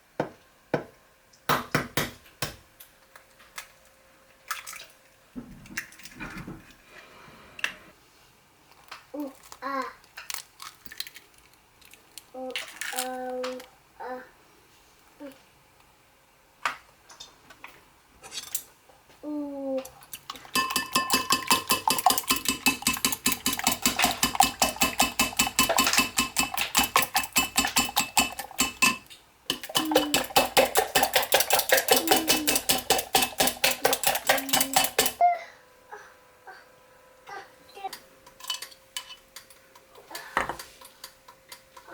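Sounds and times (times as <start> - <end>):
metal kitchenware clinking: 20.5 - 35.2, 38.3 - 41.6.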